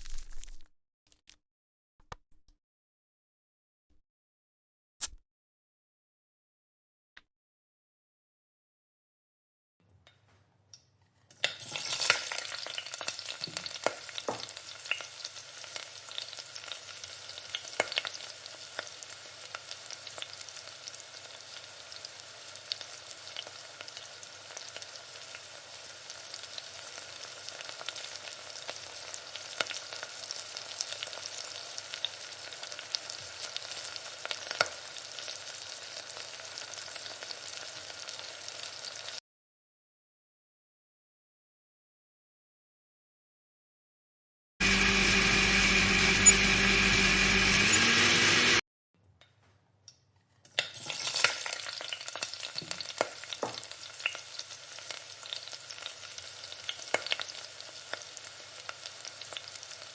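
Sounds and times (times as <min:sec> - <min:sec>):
food sizzling in hot oil: 0:00.0 - 0:01.4, 0:11.4 - 0:39.2, 0:50.6 - 0:59.9.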